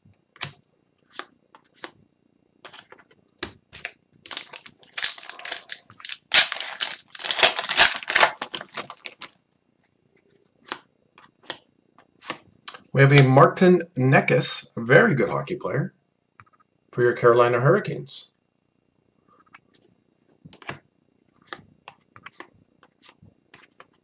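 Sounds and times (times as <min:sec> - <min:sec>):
foil wrapper crinkling and tearing: 0:04.2 - 0:09.4.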